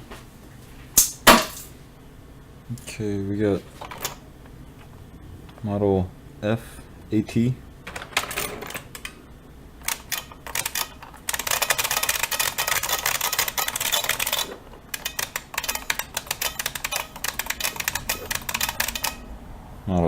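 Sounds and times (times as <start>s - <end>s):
keyboard keys clacking: 9.8s - 19.4s.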